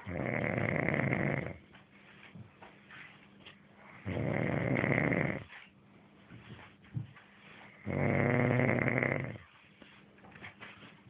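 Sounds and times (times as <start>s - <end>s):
man snoring: 0.1s - 1.6s, 4.0s - 5.4s, 7.9s - 9.4s.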